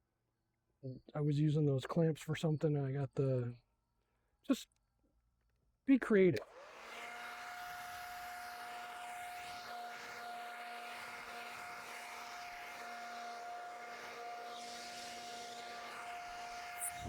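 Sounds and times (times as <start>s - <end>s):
electric sander whining: 6.4s - 17.0s.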